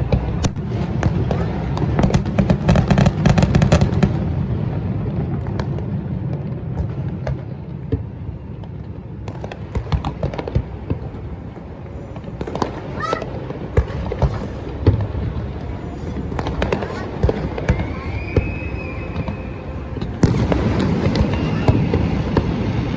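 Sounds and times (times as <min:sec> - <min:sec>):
fireworks crackling and banging: 0:00.0 - 0:22.9.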